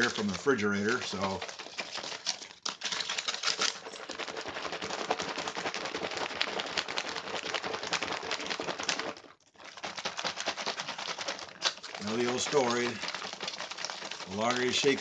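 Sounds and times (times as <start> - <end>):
pouch crinkling as shaken: 0.0 - 15.0.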